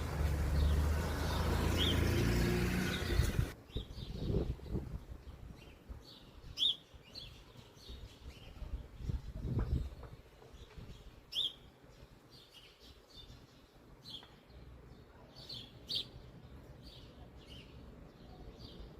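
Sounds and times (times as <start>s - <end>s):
small birds chirping: 0.0s - 18.9s.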